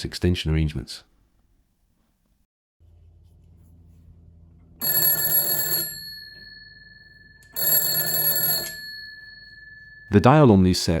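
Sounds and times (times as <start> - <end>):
telephone bell ringing: 4.8 - 10.4.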